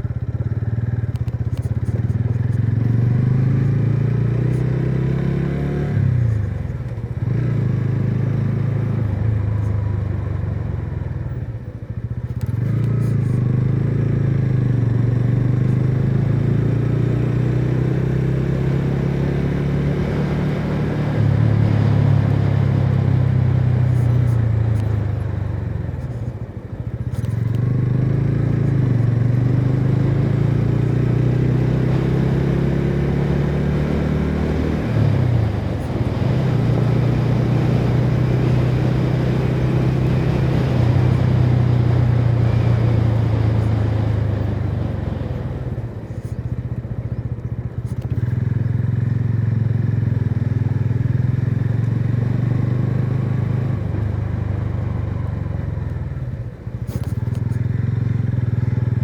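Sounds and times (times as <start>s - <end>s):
motorcycle engine revving: 0.0s - 59.0s.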